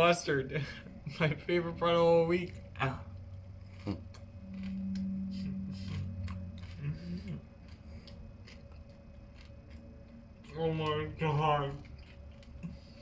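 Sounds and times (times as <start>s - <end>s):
person chewing crunchy food: 2.5s - 13.0s
person humming mmm: 3.8s - 7.6s.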